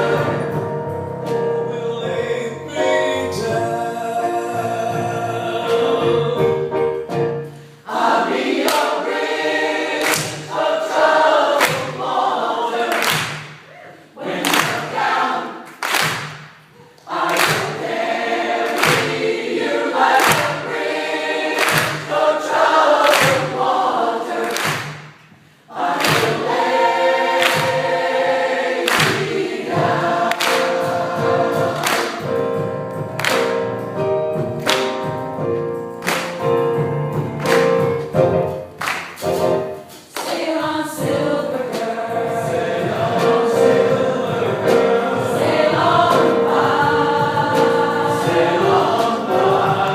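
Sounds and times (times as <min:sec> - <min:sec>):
choir singing gospel: 0:00.0 - 0:49.9.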